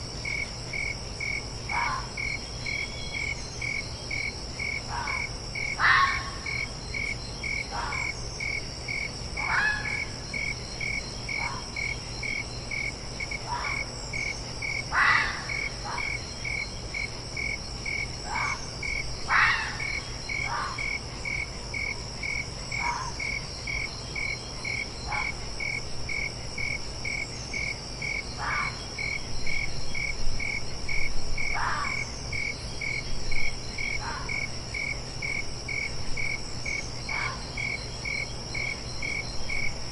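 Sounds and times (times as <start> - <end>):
crickets chirping: 0.0 - 39.9
fox barking: 1.7 - 2.2, 4.9 - 6.5, 7.7 - 8.1, 9.4 - 10.1, 11.4 - 11.7, 13.4 - 13.9, 14.9 - 16.2, 18.2 - 18.6, 19.3 - 21.0, 22.8 - 23.2, 25.0 - 25.4, 28.4 - 28.8, 31.5 - 32.0, 37.1 - 37.5.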